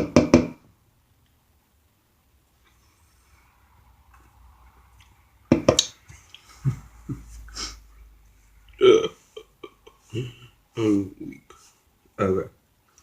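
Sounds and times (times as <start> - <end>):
soft chewing: 4.1 - 5.3
short vocal sound: 8.7 - 11.5.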